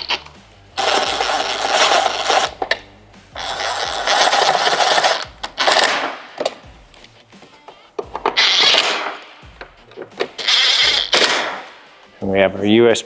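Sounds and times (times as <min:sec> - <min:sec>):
cordless power screwdriver running: 0:00.8 - 0:02.6, 0:03.4 - 0:05.9, 0:10.4 - 0:11.1.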